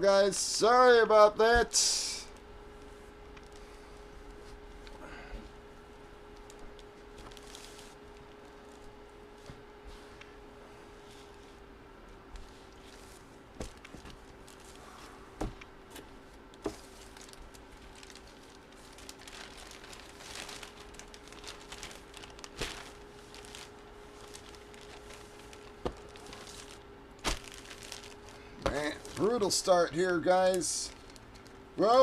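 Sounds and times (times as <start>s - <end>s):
faint steady hum: 0.0s - 32.0s
card packaging crinkling: 6.3s - 8.9s, 15.9s - 32.0s.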